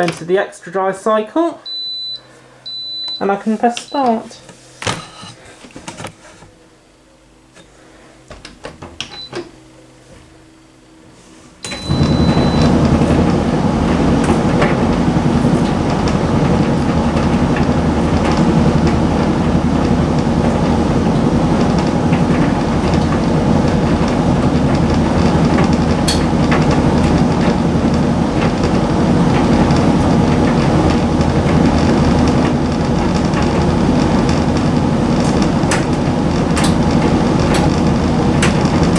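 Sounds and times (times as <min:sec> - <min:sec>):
short beeps: 0:01.7 - 0:03.3, 0:11.6 - 0:12.7
tumble dryer rumbling whoosh: 0:11.7 - 0:38.9.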